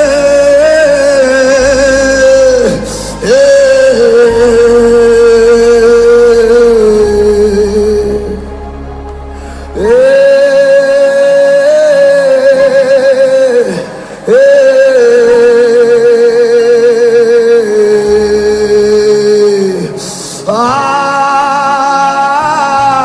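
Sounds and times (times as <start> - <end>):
person singing with vibrato: 0.0 - 23.0
soft sustained music: 0.0 - 23.0.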